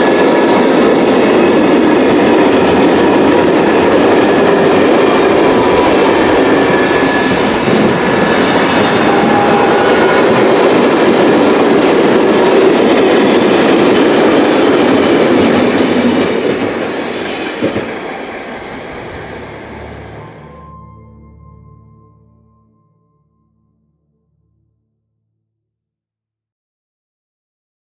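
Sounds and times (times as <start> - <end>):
freight train wheels clattering: 0.0 - 20.3
wheels squealing on rails: 0.0 - 20.6.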